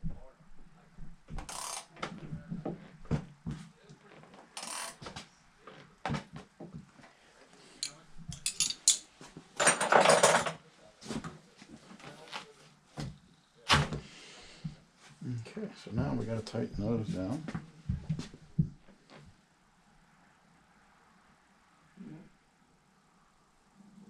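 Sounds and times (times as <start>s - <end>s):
metal tools clinking: 7.8s - 10.6s.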